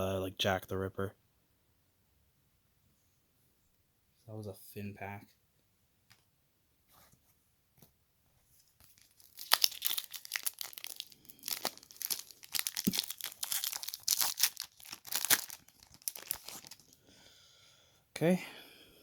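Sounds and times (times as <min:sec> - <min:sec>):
foil wrapper crinkling and tearing: 0:08.8 - 0:17.0.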